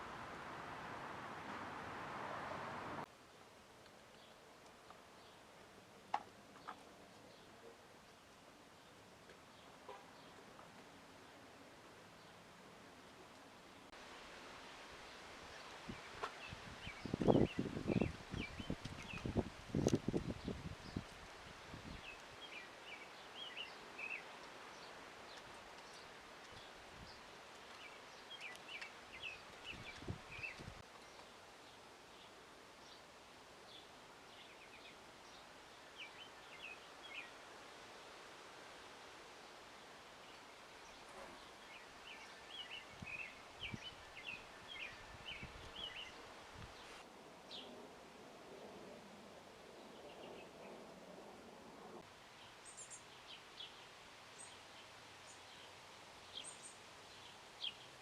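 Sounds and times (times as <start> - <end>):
outdoor background hiss: 0.0 - 58.0
songbird chirping: 15.0 - 37.5, 38.6 - 47.8, 52.0 - 58.0.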